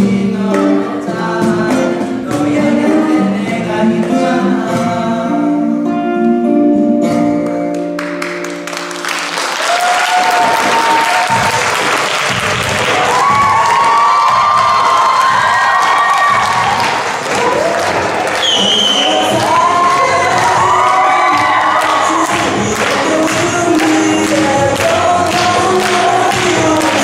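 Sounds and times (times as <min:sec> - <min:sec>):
loud shouts: 0:09.6 - 0:11.8, 0:12.8 - 0:22.6
choir singing: 0:18.5 - 0:27.0.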